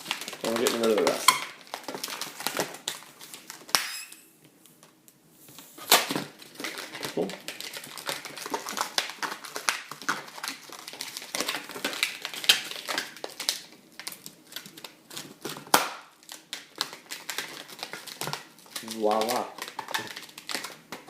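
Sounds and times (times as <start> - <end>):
balloon snaps: 15.7 - 16.1.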